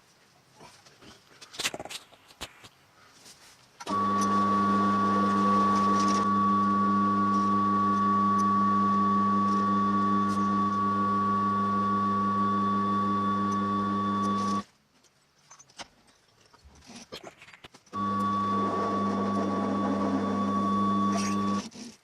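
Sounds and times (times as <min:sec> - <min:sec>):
electric motor humming and whining: 0:03.8 - 0:14.6, 0:18.0 - 0:21.8.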